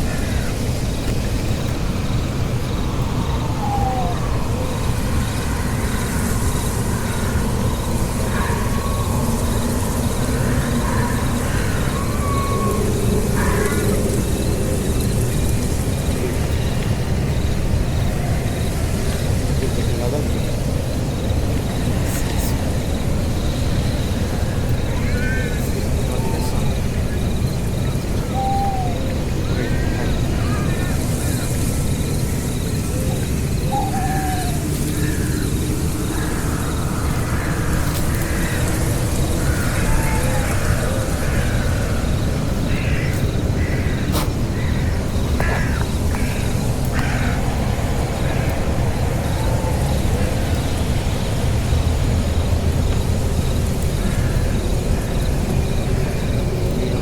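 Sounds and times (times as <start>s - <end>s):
faint voice-like calls: 0.0s - 51.7s
constant low rumble: 0.0s - 57.0s
crickets chirping: 0.0s - 57.0s
animal harsh calls: 24.5s - 31.5s, 32.7s - 47.4s.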